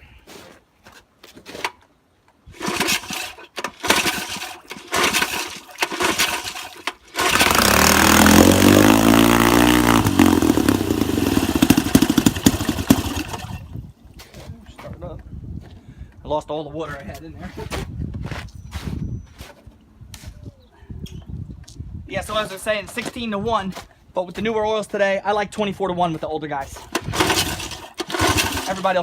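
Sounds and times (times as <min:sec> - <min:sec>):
outboard motor starting and running: 0:02.6 - 0:13.8, 0:26.8 - 0:29.0.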